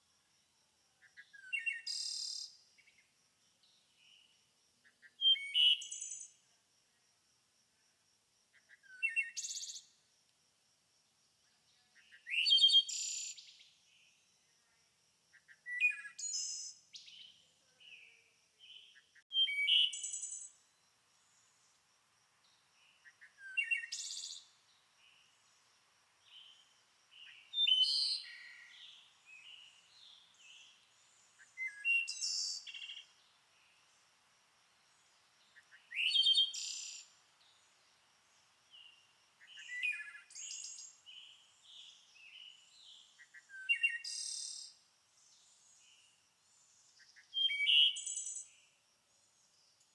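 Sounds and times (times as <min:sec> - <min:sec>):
songbird singing: 0:00.9 - 0:06.5, 0:08.5 - 0:10.0, 0:11.4 - 0:49.9.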